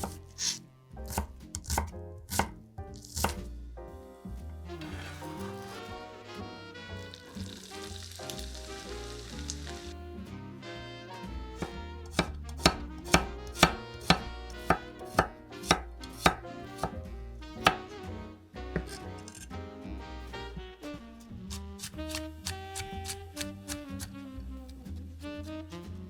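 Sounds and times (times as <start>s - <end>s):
knife chopping on cutting board: 0.0s - 3.5s, 4.8s - 5.9s, 11.6s - 17.0s, 17.6s - 17.9s, 18.8s - 19.4s, 21.5s - 24.1s.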